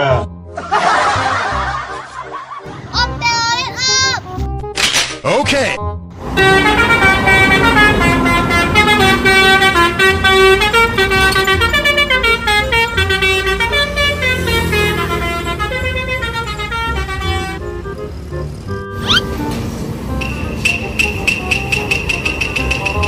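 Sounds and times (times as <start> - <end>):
bus horn playing a tune: 6.2 - 23.0.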